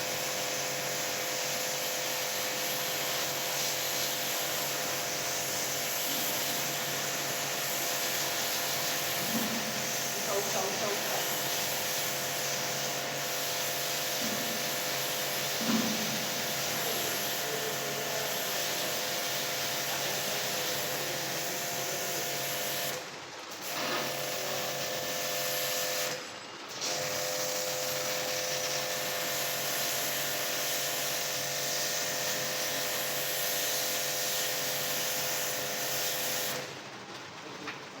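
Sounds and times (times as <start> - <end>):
machine hissing: 0.0 - 23.0.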